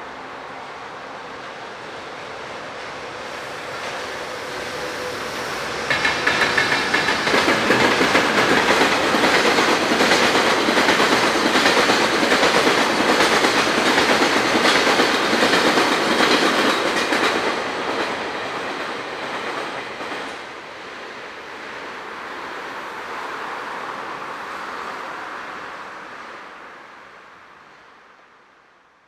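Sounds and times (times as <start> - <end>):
freight train wheels clicking: 3.3 - 20.5.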